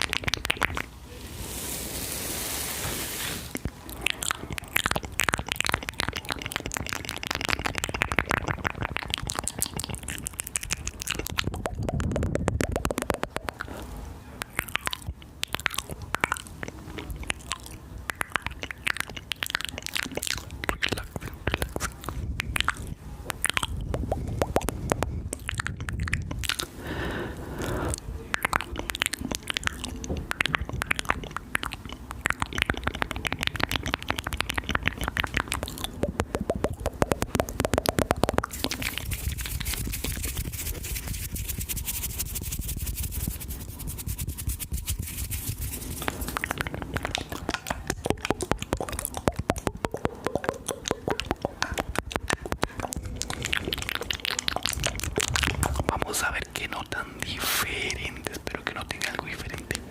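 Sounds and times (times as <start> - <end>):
wet mouth clicks and smacks: 0.0 - 0.9, 3.5 - 59.9
steady hiss: 1.0 - 3.7.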